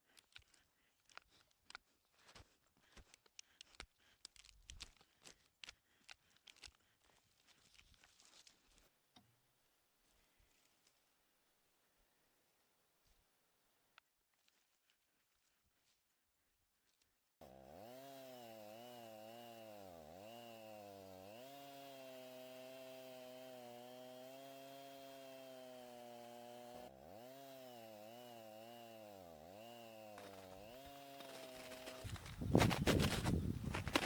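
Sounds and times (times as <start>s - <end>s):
chainsaw engine running: 17.4s - 34.0s.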